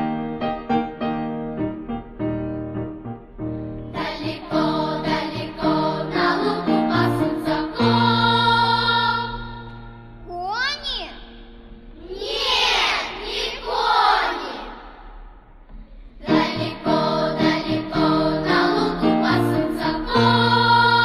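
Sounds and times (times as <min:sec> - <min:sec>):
choir-like voices: 0:03.9 - 0:09.9, 0:12.0 - 0:21.0.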